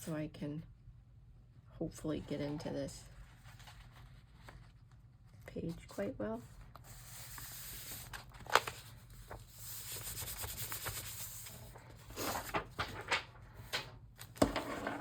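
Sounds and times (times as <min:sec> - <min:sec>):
paper pages rubbing: 0:03.1 - 0:05.0, 0:06.5 - 0:13.1.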